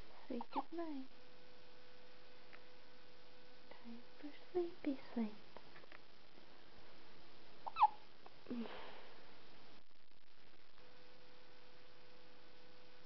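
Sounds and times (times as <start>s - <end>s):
squeaky hiccups: 7.6s - 8.0s.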